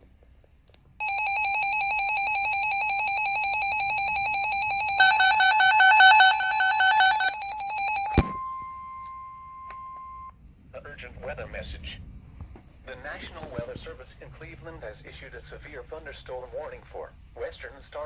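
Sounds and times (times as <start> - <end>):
electronic alarm warbling: 1.0 - 10.3
steady warning alert tone: 1.0 - 10.3
second alarm: 1.0 - 10.4.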